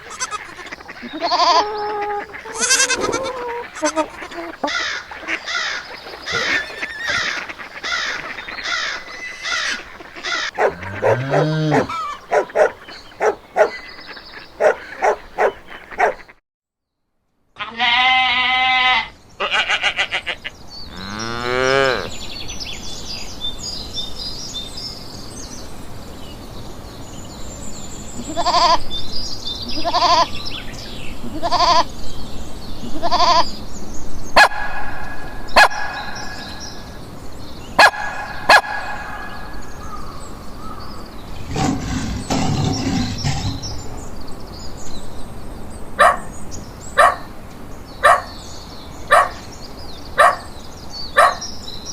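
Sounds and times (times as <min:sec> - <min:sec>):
goat or sheep bleating: 0:00.0 - 0:05.0, 0:09.2 - 0:12.2, 0:17.6 - 0:20.4, 0:31.2 - 0:31.9, 0:32.9 - 0:33.4.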